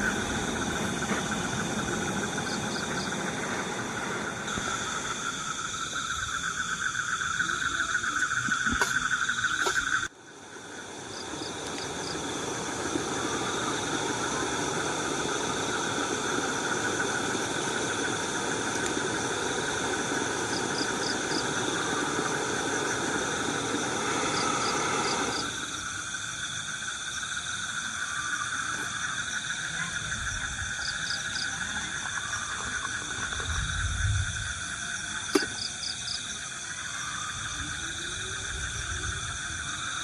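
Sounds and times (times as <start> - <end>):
steady low rumble: 0.0 - 7.4
crickets and insects chirring: 0.0 - 40.0.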